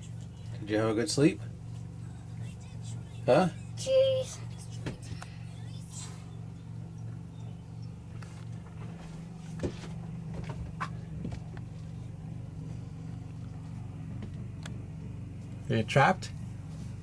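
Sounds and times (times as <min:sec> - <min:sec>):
light knocks and clicks: 0:08.1 - 0:11.8.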